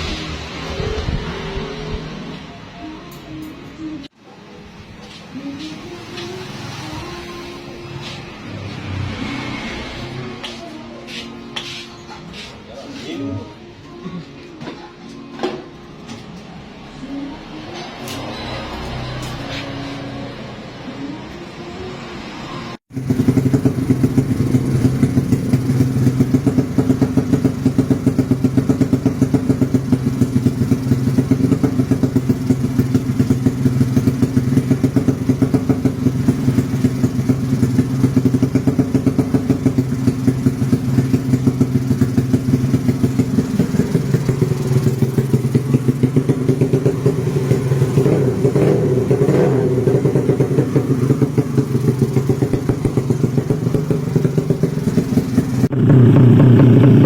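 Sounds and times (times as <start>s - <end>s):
motorcycle engine idling: 22.9s - 57.0s.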